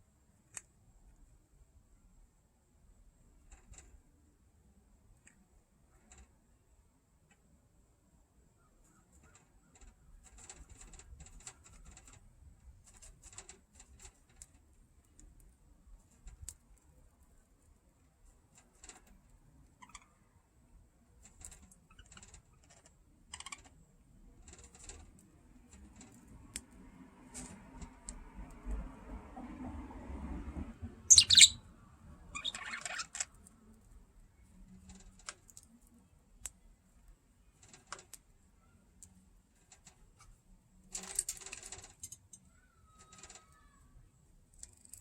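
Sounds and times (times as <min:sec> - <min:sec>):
bird cracking seeds: 0:40.9 - 0:42.4.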